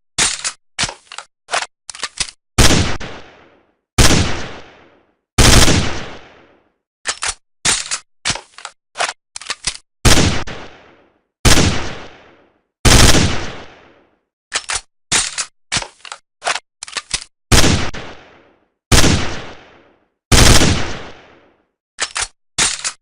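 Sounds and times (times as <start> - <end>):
echoing gunshots: 2.6 - 6.7, 10.0 - 14.1, 17.5 - 21.6.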